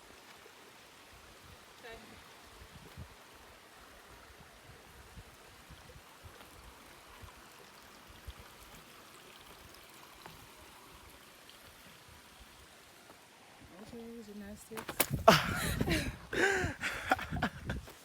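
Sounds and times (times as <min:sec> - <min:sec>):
creek running water: 0:00.0 - 0:18.0.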